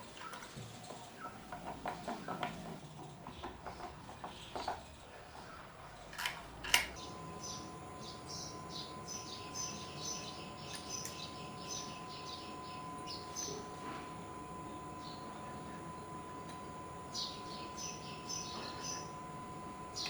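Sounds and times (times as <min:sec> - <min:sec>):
bird chirping: 0:07.0 - 0:13.9, 0:17.1 - 0:20.0.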